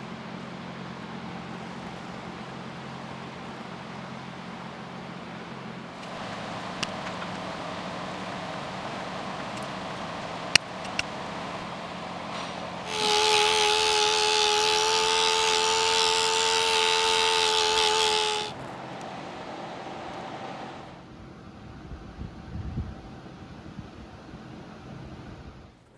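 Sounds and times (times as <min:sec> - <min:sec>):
power tool whining: 0:06.0 - 0:19.0.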